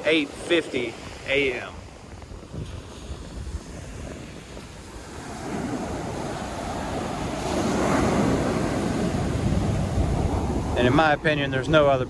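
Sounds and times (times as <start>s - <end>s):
surf breaking on beach: 0.0s - 12.0s
wind rumbling on microphone: 0.0s - 12.0s.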